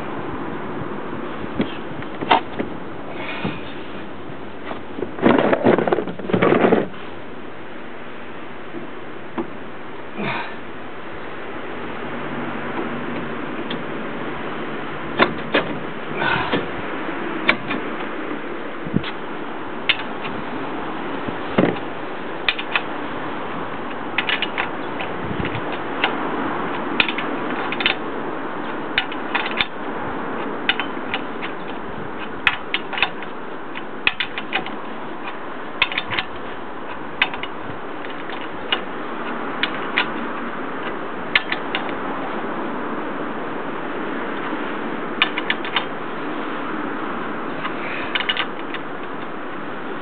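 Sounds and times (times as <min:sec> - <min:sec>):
hand tools clicking on metal: 0:22.5 - 0:22.9, 0:23.9 - 0:28.0, 0:28.6 - 0:29.8, 0:30.4 - 0:42.0, 0:45.2 - 0:45.9, 0:47.6 - 0:49.3.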